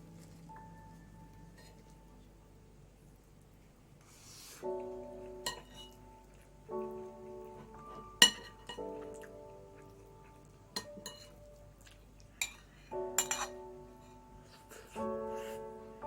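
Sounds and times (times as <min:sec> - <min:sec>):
soft piano music: 0:00.0 - 0:16.0
tableware clinking: 0:05.4 - 0:06.0, 0:07.9 - 0:08.9, 0:10.8 - 0:11.4, 0:13.2 - 0:13.6.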